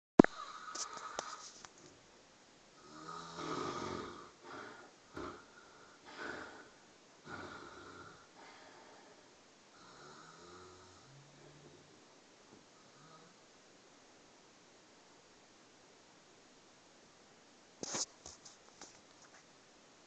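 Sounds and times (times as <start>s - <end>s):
person snoring: 0.3s - 1.4s, 2.8s - 11.9s, 12.8s - 13.4s.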